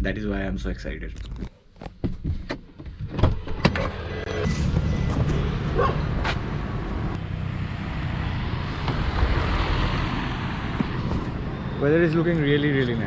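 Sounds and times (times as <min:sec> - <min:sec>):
car engine running: 0:03.4 - 0:07.5.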